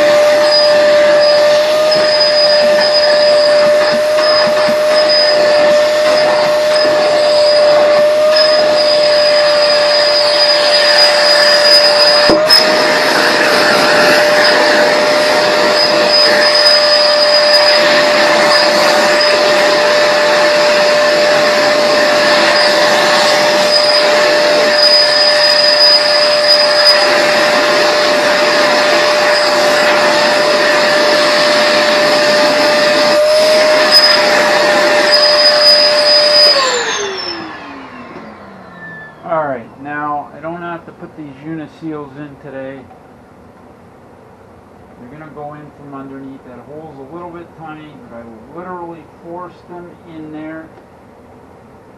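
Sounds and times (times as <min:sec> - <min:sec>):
vacuum motor winding down: 0:00.0 - 0:39.8
shop vac vacuuming sawdust: 0:00.0 - 0:42.7.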